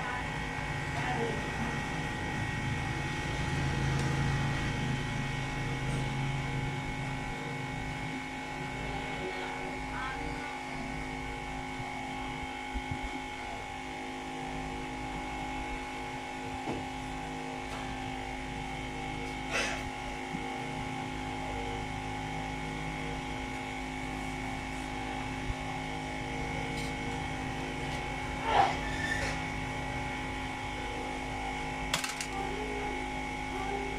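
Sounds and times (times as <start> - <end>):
electrical hum of equipment: 0.0 - 33.9.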